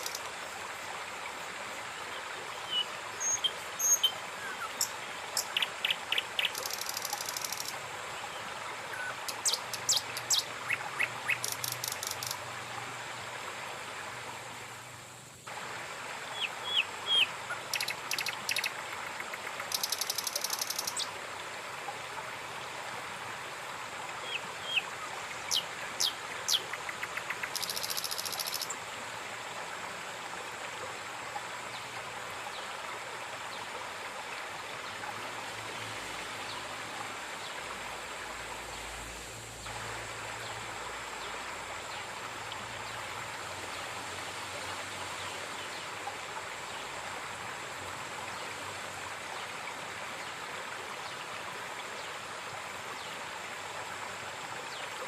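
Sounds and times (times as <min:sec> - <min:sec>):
high chirping calls: 0:00.0 - 0:00.3, 0:02.6 - 0:07.7, 0:08.9 - 0:12.4, 0:16.4 - 0:21.1, 0:24.3 - 0:28.8
river water flowing: 0:00.0 - 0:55.0.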